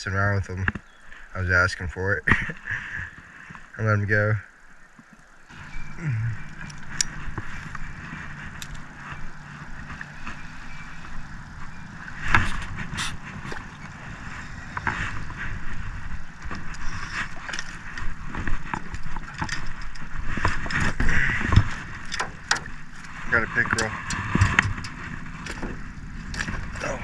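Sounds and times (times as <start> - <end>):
low motor hum: 4.8 - 27.0
clicks and knocks: 18.7 - 23.1.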